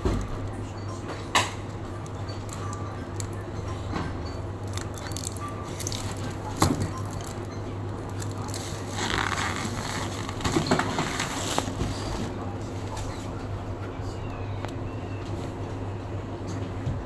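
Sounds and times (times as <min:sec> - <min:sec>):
packaging rustle: 0:08.2 - 0:13.2.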